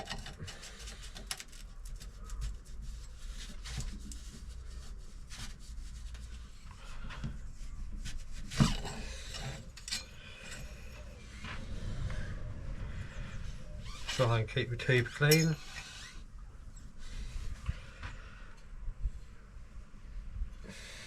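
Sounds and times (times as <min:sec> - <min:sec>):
rubbing and scraping on metal: 0:00.0 - 0:12.0, 0:12.9 - 0:16.3.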